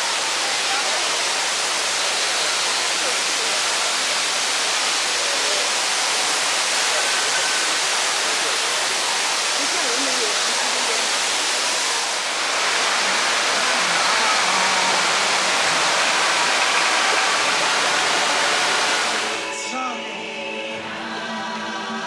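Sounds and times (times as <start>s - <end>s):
loud rushing noise: 11.2s - 19.6s
music with choir singing: 17.3s - 22.0s.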